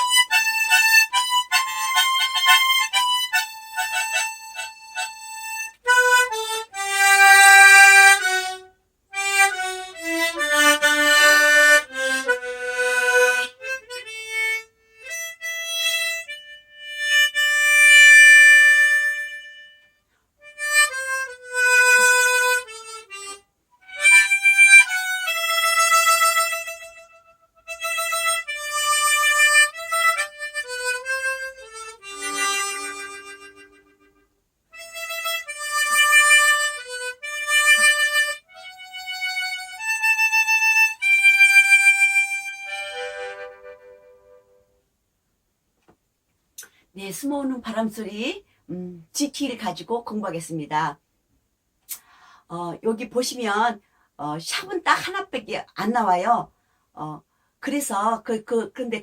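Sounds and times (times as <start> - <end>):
harmonica melody: 0.0 - 44.8.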